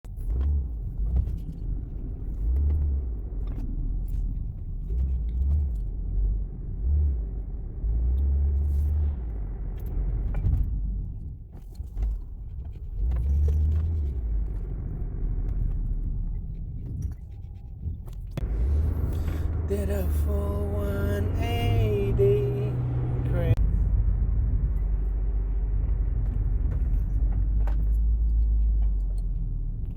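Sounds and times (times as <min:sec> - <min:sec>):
car driving low rumble: 0:00.0 - 0:29.9
light clicks and rattles: 0:26.2 - 0:29.9.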